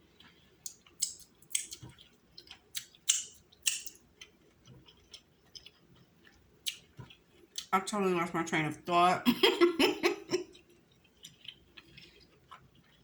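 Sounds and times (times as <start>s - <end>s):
crab shell cracking and crunching: 0.2s - 7.7s, 10.4s - 13.0s.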